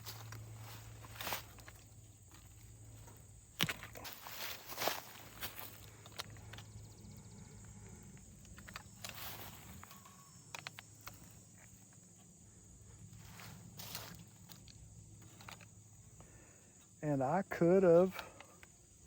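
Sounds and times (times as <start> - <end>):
insect chirring: 0.0 - 19.0
fence wire clicks and rustles: 8.4 - 11.4.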